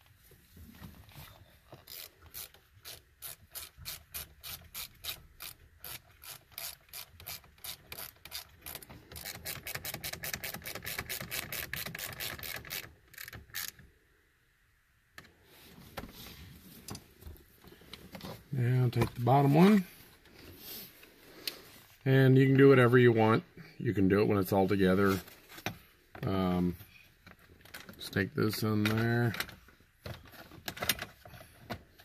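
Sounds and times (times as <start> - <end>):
socket ratchet clicking: 1.8 - 13.8.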